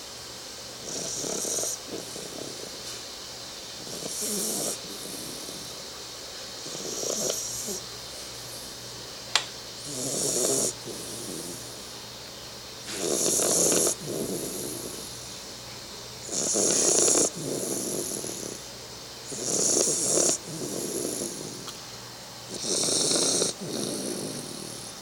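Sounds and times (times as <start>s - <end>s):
puppy snoring: 0.8s - 3.1s, 3.7s - 6.0s, 6.6s - 8.9s, 9.8s - 12.0s, 12.8s - 15.4s, 16.2s - 21.8s, 22.4s - 25.0s
sharp click: 9.3s - 9.5s.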